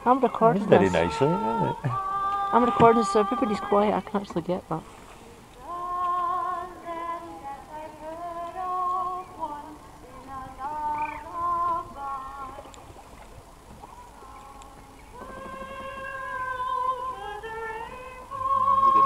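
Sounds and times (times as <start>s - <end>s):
slow melody of wavering notes: 0.0s - 4.9s.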